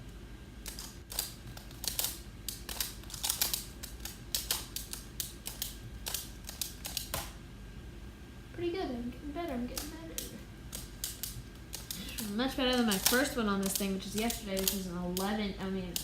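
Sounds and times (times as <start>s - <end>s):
puzzle cube clicking as turned: 0.6s - 7.3s, 9.8s - 12.0s.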